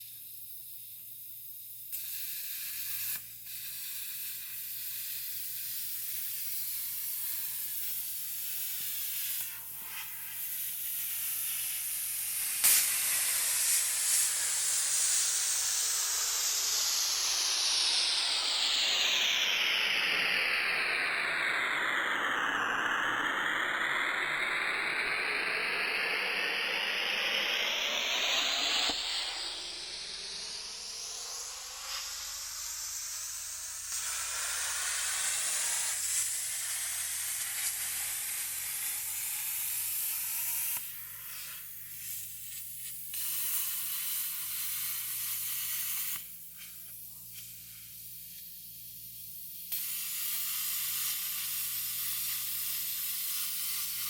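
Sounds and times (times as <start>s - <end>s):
rushing hiss: 10.2s - 21.6s, 26.7s - 48.4s.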